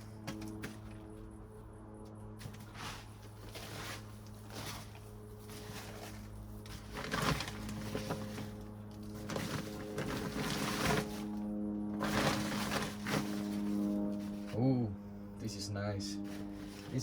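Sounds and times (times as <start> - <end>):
hands rustling in potting mix: 2.4 - 14.6, 16.2 - 17.0.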